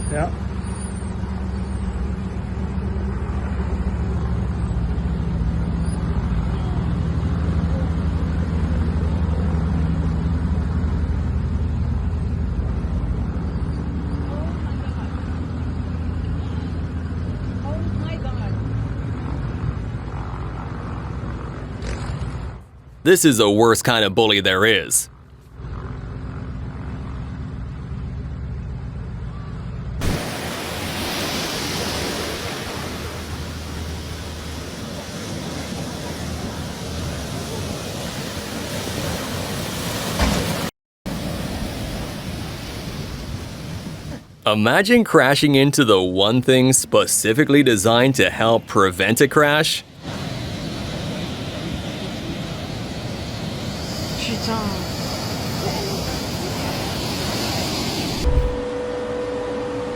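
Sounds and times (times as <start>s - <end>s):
engine droning steadily: 0.0s - 40.3s, 43.2s - 59.9s
wind and water rushing: 30.0s - 44.4s, 47.7s - 58.7s.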